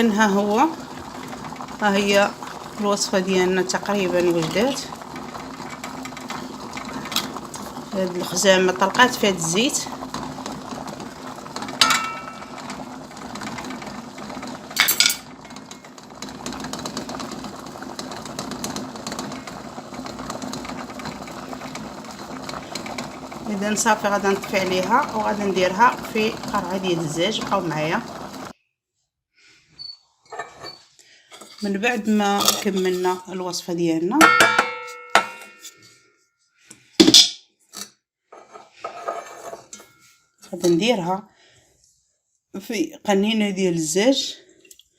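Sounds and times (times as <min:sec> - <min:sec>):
water bubbling with fine rattle: 0:00.0 - 0:28.5
utensil knocking on cooking pot: 0:11.8 - 0:12.6, 0:34.2 - 0:35.5
soft scraping and rustling: 0:38.3 - 0:40.6.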